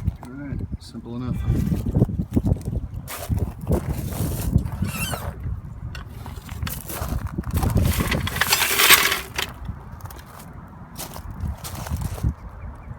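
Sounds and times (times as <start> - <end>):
metal scraping: 6.0 - 9.6
metal lug nuts clinking: 6.0 - 9.7.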